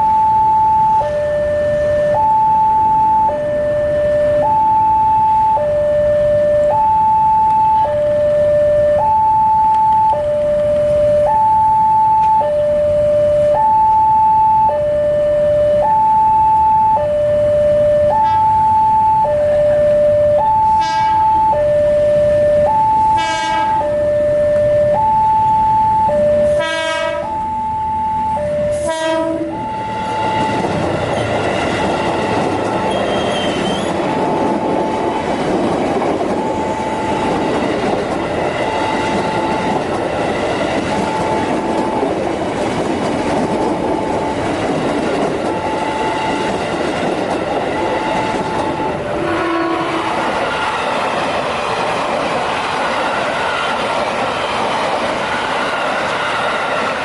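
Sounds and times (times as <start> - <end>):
crossing warning signal tone: 0.0 - 42.1, 44.2 - 50.9
train horn blasts: 17.0 - 30.6, 32.8 - 34.0, 48.2 - 50.2
train wheels clattering on rails: 30.1 - 57.0.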